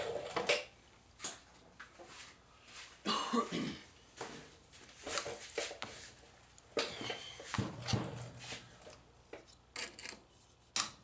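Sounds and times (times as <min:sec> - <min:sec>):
man coughing: 0:03.0 - 0:03.9.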